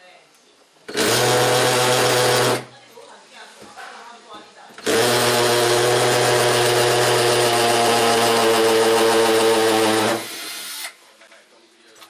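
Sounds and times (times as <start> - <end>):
electric drill running: 0.9 - 2.7, 4.8 - 11.0.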